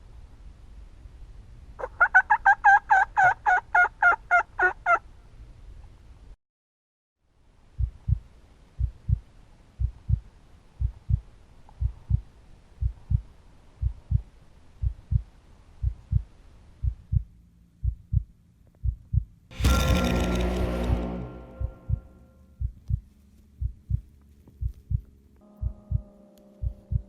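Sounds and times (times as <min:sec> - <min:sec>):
heartbeat double thump: 0:07.8 - 0:08.2, 0:08.8 - 0:09.2, 0:09.8 - 0:10.2, 0:10.8 - 0:11.2, 0:11.8 - 0:12.2, 0:12.8 - 0:13.2, 0:13.8 - 0:14.2, 0:14.8 - 0:16.2, 0:16.8 - 0:20.4, 0:23.6 - 0:27.0.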